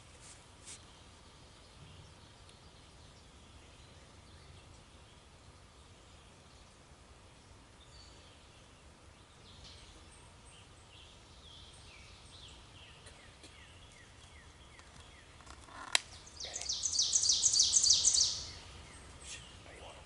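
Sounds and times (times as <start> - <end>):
faint bird calls: 12.4 - 20.0.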